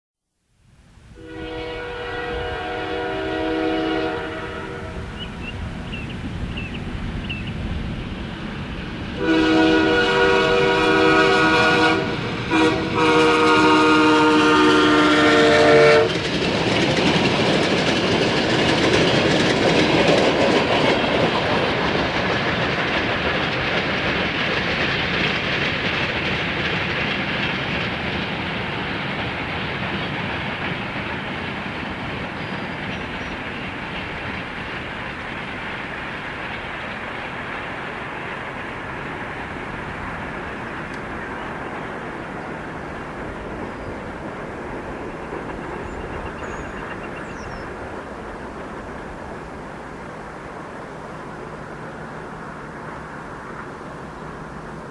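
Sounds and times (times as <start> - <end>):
locomotive horn blasts: 1.2 - 5.1, 9.2 - 16.2
train wheels clacking on rails: 1.4 - 54.9.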